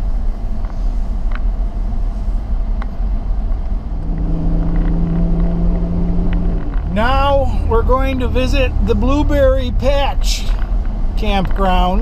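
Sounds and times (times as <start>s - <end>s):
engine hum: 0.0s - 12.0s
car rumbling over dirt road: 3.1s - 12.0s.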